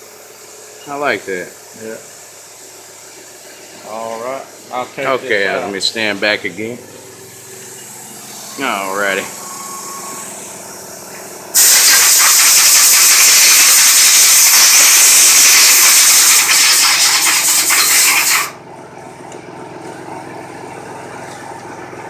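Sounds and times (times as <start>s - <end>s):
milling machine humming: 2.8s - 12.5s
compressed air hissing: 7.3s - 18.6s.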